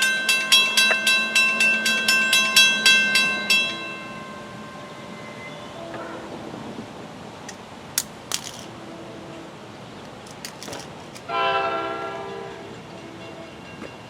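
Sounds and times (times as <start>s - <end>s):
train horn blast: 4.8s - 6.5s, 11.3s - 13.5s.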